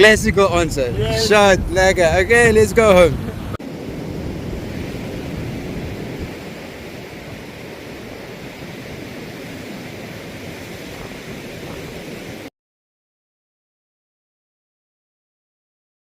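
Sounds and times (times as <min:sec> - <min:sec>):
surf rushing: 0:00.0 - 0:12.5
wind buffeting microphone: 0:00.0 - 0:12.5.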